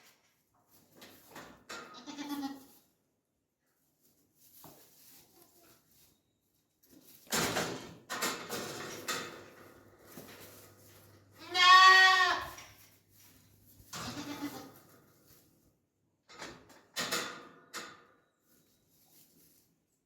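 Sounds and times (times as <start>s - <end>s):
goat bleating: 2.0s - 2.7s, 11.4s - 12.6s, 14.0s - 14.8s.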